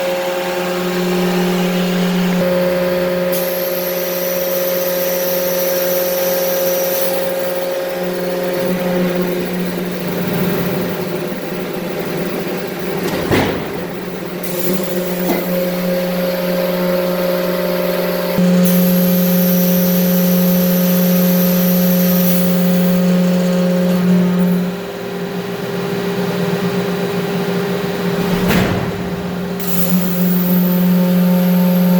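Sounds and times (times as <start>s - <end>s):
high machine whine: 0.0s - 31.9s
machinery multi-tone hum: 0.0s - 31.9s
sharp metal clank: 13.0s - 15.9s, 28.2s - 30.4s.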